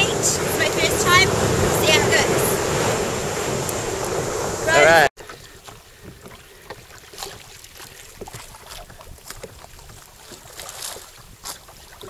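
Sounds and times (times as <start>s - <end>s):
low wind rumble: 0.0s - 5.1s
water splashing around a kayak: 0.0s - 12.0s.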